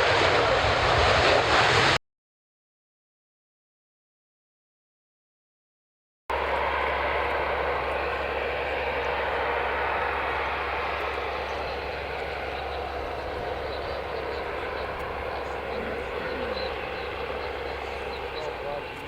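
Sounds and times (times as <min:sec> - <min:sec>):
aircraft engine roar: 0:00.0 - 0:02.0, 0:06.3 - 0:19.0.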